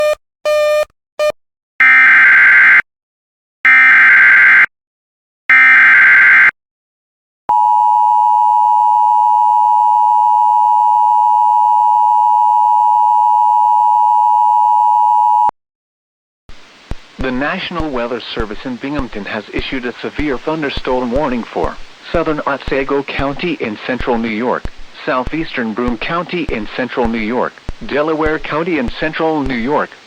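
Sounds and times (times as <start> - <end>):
short beeps: 7.5 - 15.5.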